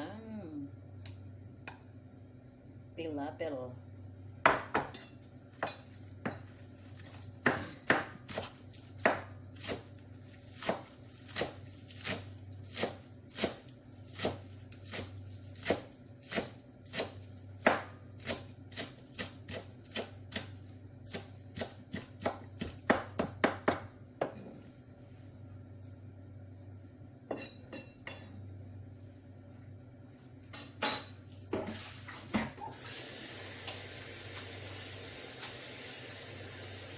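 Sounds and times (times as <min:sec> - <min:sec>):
knife chopping on cutting board: 0:05.6 - 0:09.9, 0:10.5 - 0:24.6.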